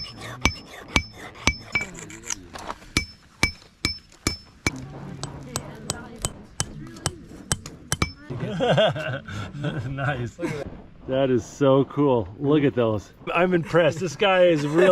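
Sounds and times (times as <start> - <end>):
hammer striking nail on metal: 0.0 - 2.0, 2.9 - 8.3.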